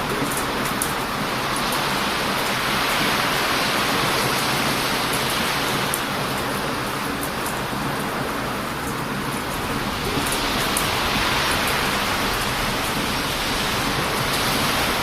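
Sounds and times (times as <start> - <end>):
heavy surf rushing: 0.0 - 15.0
bonfire crackling: 4.3 - 15.0.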